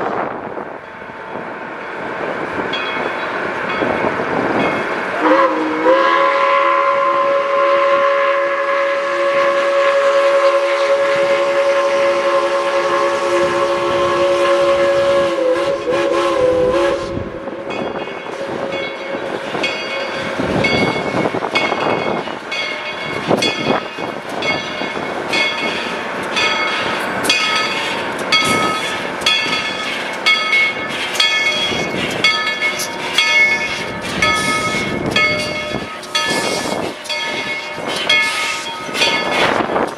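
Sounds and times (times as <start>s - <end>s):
train ringing strikes: 0.8s - 8.3s, 16.9s - 39.9s
steam locomotive whistle: 5.1s - 21.4s, 26.6s - 30.0s, 30.7s - 39.9s.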